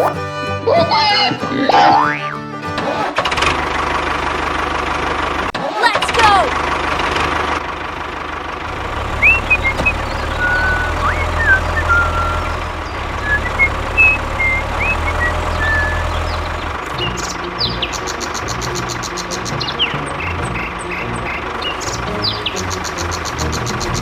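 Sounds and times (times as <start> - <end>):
birds chirping: 0.0 - 2.6, 8.7 - 24.0
vehicle engine idling rumble: 3.2 - 24.0.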